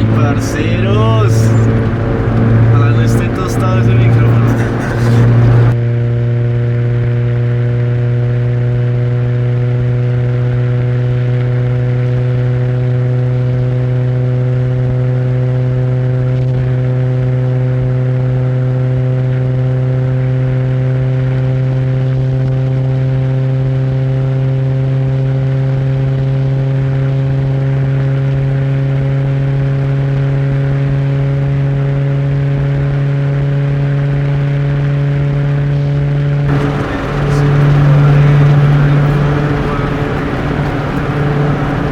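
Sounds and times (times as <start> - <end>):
car exhaust engine drone: 0.0 - 5.8, 36.5 - 41.9.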